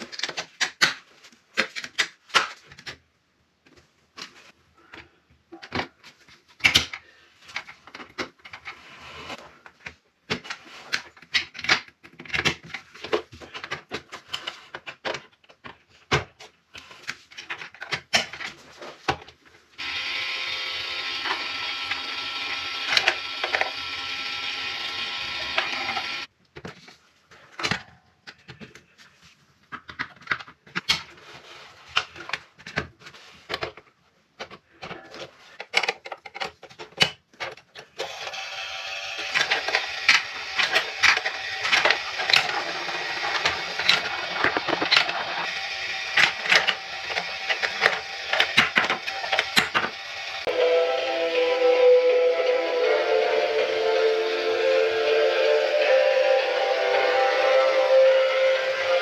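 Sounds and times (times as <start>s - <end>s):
held toy tones: 19.8s - 26.3s
marbles clacking down a track: 38.1s - 50.5s.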